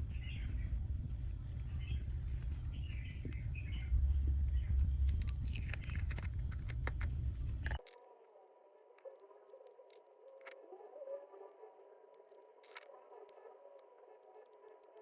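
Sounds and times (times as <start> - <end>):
bird-like chirps: 0.0 - 6.6
wind rumble on microphone: 0.0 - 7.8
faint steady hum: 0.0 - 15.0
sharp clicks: 2.3 - 8.0.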